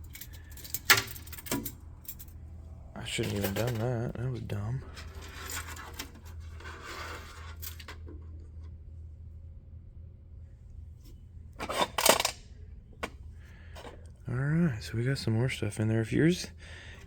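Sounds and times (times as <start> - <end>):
small metal parts clinking: 0.0 - 2.4, 3.2 - 4.1, 4.9 - 8.0, 11.7 - 12.4
steady low hum: 0.0 - 17.0.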